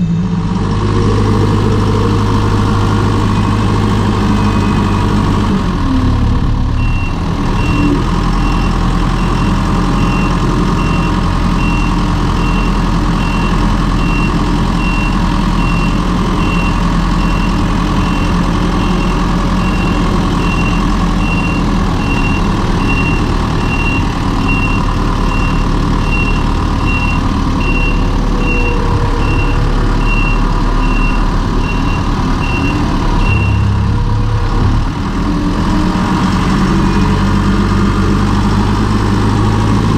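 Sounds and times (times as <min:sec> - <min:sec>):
vehicle engine under load: 0:00.0 - 0:39.9
reversing alarm beeping: 0:00.9 - 0:05.5, 0:06.7 - 0:33.8.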